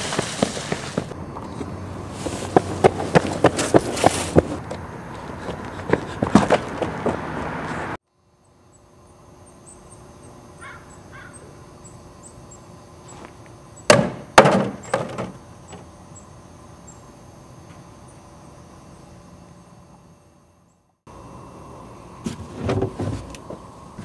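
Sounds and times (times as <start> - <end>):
loud sharp knocks: 13.9 - 15.3.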